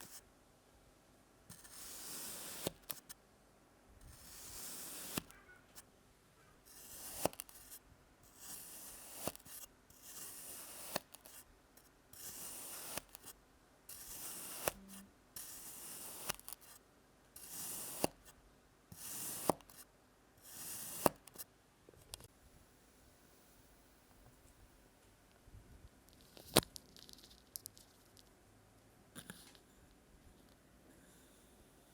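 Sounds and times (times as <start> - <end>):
blade slicing sand: 1.5 - 3.0, 4.1 - 5.3, 6.7 - 7.8, 8.4 - 11.4, 12.2 - 13.3, 13.9 - 14.8, 15.4 - 16.7, 17.4 - 18.2.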